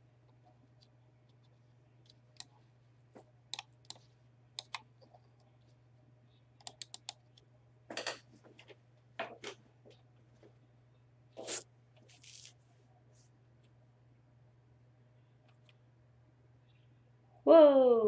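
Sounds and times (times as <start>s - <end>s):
faint steady hum: 0.0s - 18.0s
mouse and keyboard clicks: 4.6s - 5.5s, 6.6s - 7.4s.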